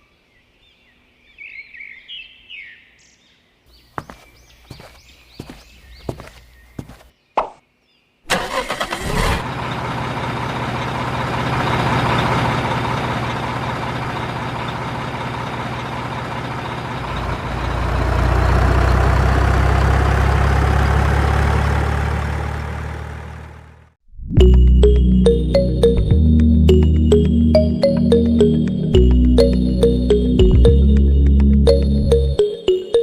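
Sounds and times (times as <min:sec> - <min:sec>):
engine cranking and running: 0:08.3 - 0:23.9.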